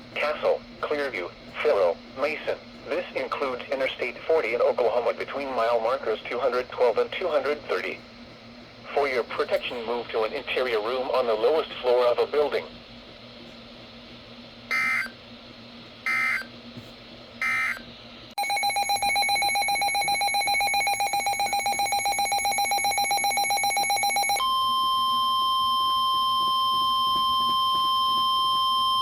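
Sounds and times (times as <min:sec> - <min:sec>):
steady single-pitch alarm tone: 0:14.7 - 0:15.2, 0:16.0 - 0:16.5, 0:17.4 - 0:29.0
rapidly pulsing electronic alert tone: 0:18.4 - 0:24.4.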